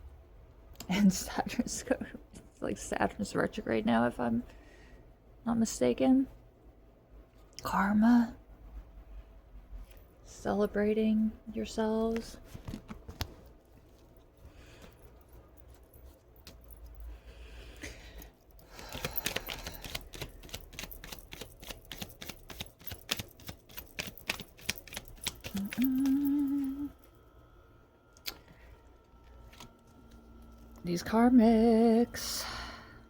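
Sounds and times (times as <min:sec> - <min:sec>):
cards being shuffled: 0:12.1 - 0:14.0, 0:18.7 - 0:26.9, 0:29.3 - 0:30.2.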